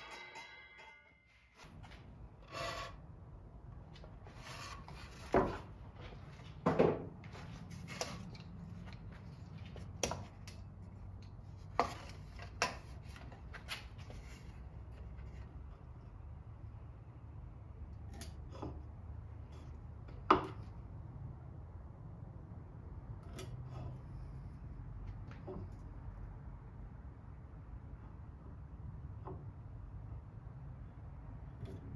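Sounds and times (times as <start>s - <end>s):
rubbing and scraping wood: 1.6s - 3.0s, 3.9s - 6.6s, 7.2s - 10.4s, 11.4s - 16.0s.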